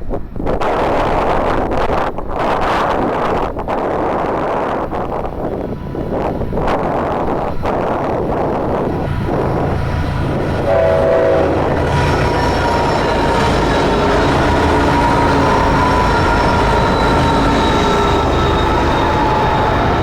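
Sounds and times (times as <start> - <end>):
passing train rumble: 0.0 - 20.0
train horn blast: 10.6 - 19.7.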